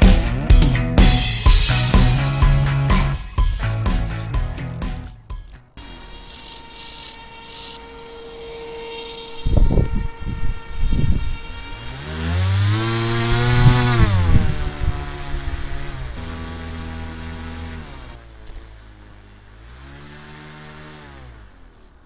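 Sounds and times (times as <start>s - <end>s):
low thumps: 0.0s - 5.8s, 9.4s - 17.8s
boat motor whining: 3.0s - 22.0s.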